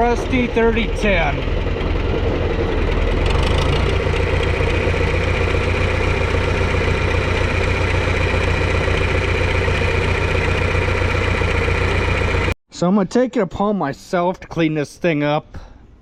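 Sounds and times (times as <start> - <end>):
tractor engine idling: 0.0 - 12.6.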